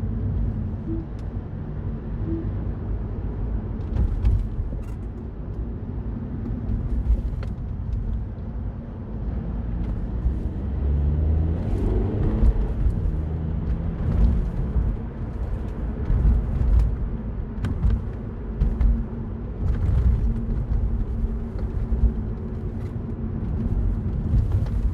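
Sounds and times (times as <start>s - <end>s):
car engine heard from cabin: 0.0s - 24.9s.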